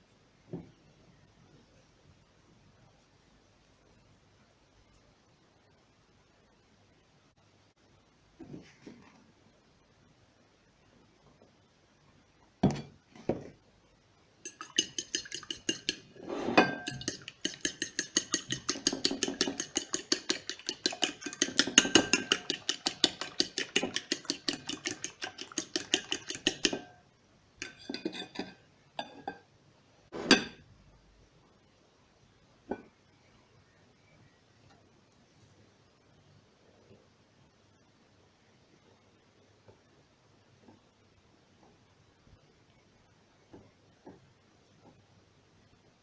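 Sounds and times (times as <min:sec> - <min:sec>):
metal utensil beating a bowl: 0:14.4 - 0:27.0.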